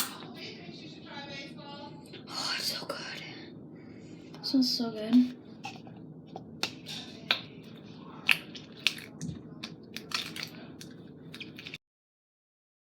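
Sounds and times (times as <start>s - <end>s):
slime squished by hand: 8.2s - 11.8s.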